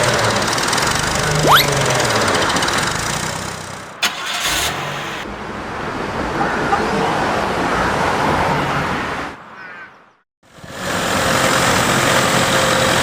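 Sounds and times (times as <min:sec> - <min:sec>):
vehicle noise: 0:04.0 - 0:09.3.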